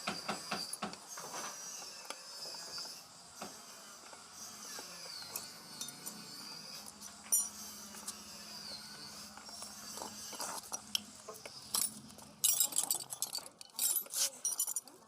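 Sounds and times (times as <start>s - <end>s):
metallic clinks and knocks: 10.5s - 15.0s.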